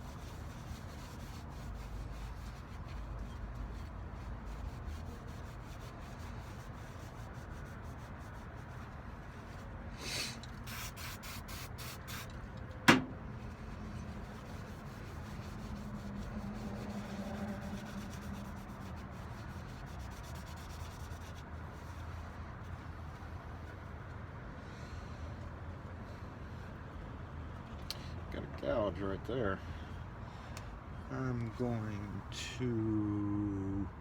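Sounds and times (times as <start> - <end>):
short hissy bursts: 10.0 - 12.4.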